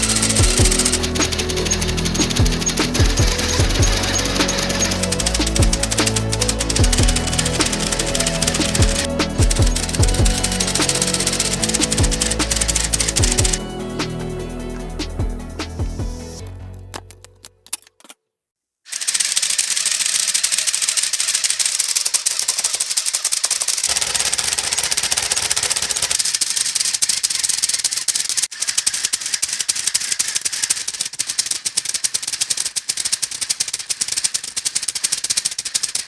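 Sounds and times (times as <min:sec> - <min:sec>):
plastic engine model clattering: 0:18.9 - 0:36.0.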